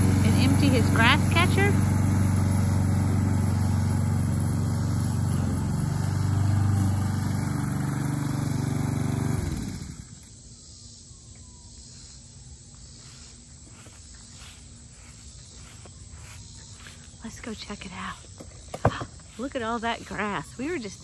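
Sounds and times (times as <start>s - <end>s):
lawn mower engine running: 0.0s - 10.4s, 13.6s - 21.0s.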